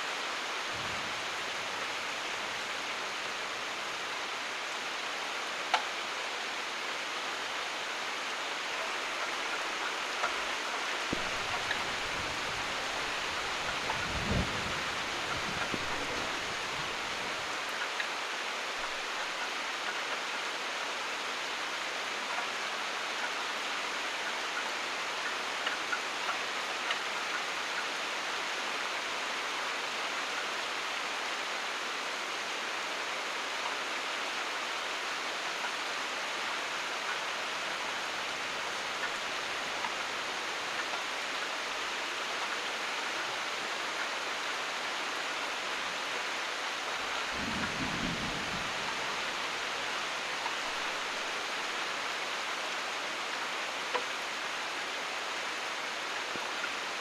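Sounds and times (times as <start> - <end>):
steady rain falling: 0.0 - 57.0
low rumble of thunder: 11.2 - 17.3, 47.2 - 49.8.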